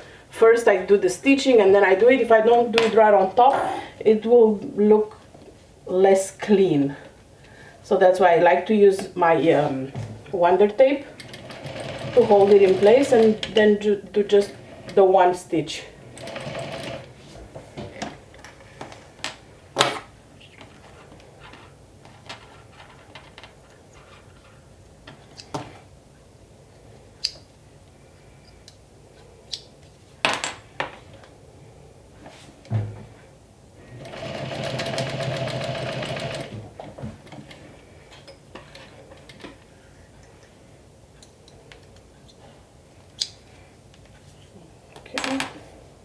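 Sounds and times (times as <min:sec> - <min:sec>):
sewing machine stitching: 0:11.2 - 0:13.6, 0:16.0 - 0:17.2, 0:33.9 - 0:36.6.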